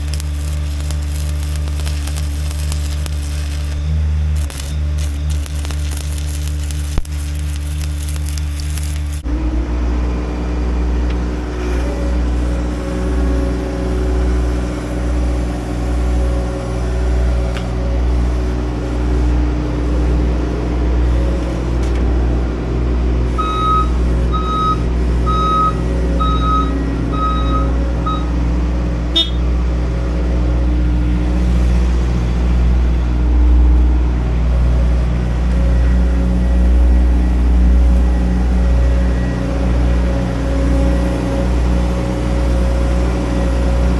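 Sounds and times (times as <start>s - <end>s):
diesel engine running: 0.0s - 43.9s
reversing alarm beeping: 23.3s - 28.5s, 29.2s - 29.5s.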